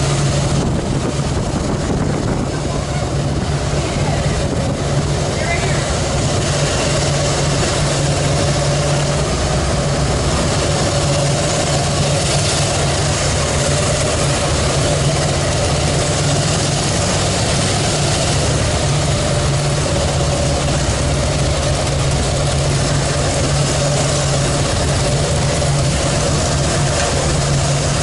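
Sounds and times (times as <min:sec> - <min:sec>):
motorcycle engine running: 0:00.0 - 0:28.0
rushing hiss: 0:00.0 - 0:28.0.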